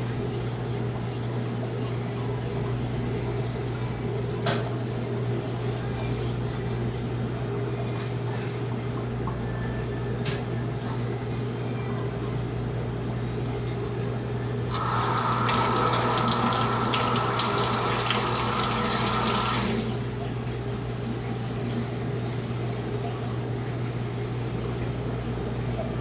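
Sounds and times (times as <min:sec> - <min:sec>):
water tap running: 0:14.7 - 0:20.3.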